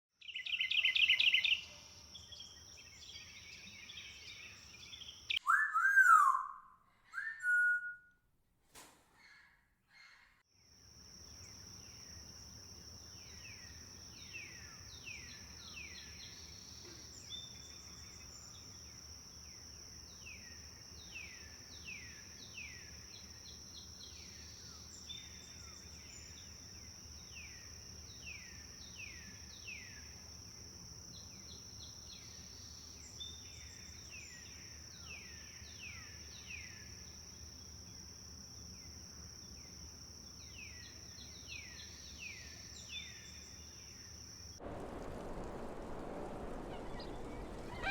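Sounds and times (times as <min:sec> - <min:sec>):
birds calling: 0:44.6 - 0:47.9.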